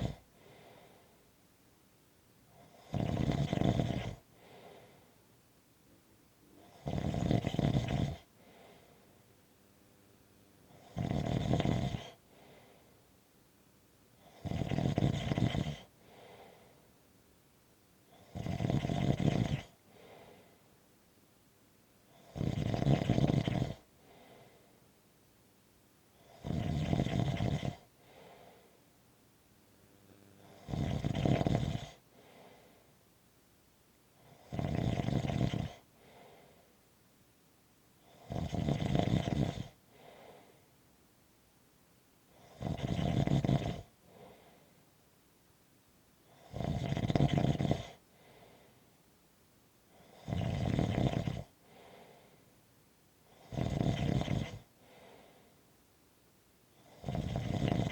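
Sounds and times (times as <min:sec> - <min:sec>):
person snoring: 0:00.0 - 0:00.8, 0:02.6 - 0:05.0, 0:06.6 - 0:09.0, 0:10.7 - 0:12.9, 0:14.2 - 0:16.7, 0:18.1 - 0:20.5, 0:22.1 - 0:24.6, 0:26.2 - 0:28.7, 0:29.8 - 0:32.8, 0:34.2 - 0:36.5, 0:38.1 - 0:40.5, 0:42.4 - 0:44.6, 0:46.3 - 0:48.6, 0:50.0 - 0:52.2, 0:53.3 - 0:55.4, 0:56.8 - 0:57.9.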